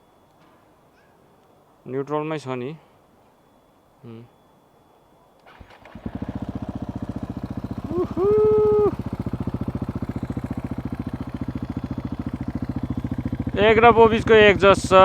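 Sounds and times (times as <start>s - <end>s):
motorcycle engine idling: 5.4s - 15.0s
loud held tone: 6.1s - 15.0s.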